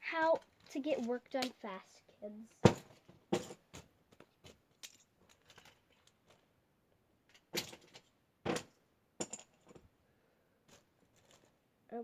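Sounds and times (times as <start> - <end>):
toys clattering into container: 0.1 - 1.7, 7.3 - 9.8.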